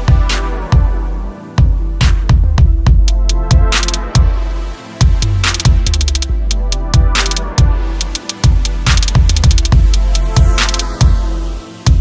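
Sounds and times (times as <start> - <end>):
electronic music: 0.0 - 12.0
drum hits: 1.6 - 4.4, 5.0 - 11.2
heavy sustained bass: 4.4 - 10.6.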